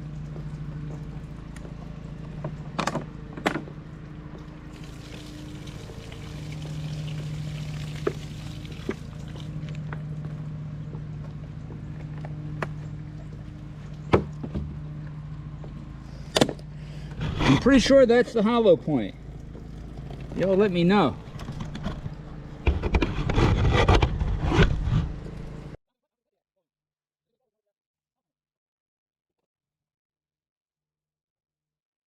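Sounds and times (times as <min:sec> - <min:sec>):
low engine-like hum: 0:00.0 - 0:25.8
water bottles clicking and knocking: 0:19.2 - 0:22.2.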